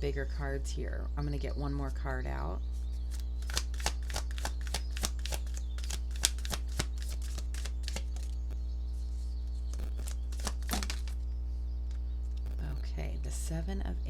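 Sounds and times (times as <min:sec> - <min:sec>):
low electrical hum: 0:00.0 - 0:14.0
cards shuffling snaps and taps: 0:03.0 - 0:08.4, 0:09.7 - 0:11.2.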